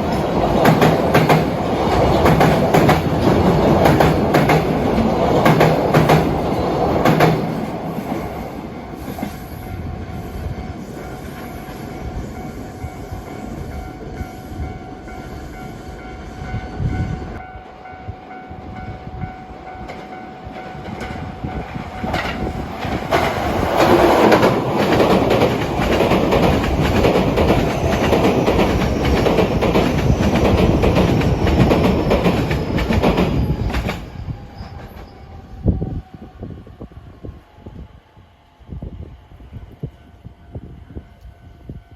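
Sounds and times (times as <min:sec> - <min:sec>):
train wheels clattering over rails: 0:00.0 - 0:09.5, 0:19.8 - 0:35.4.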